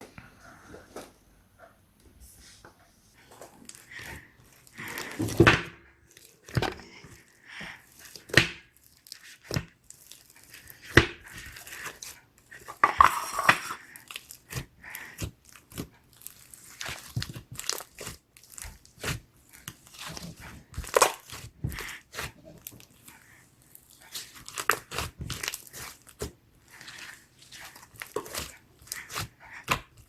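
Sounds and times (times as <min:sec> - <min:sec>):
slime crackling and popping: 0:07.9 - 0:12.6, 0:13.8 - 0:23.1, 0:23.7 - 0:30.0.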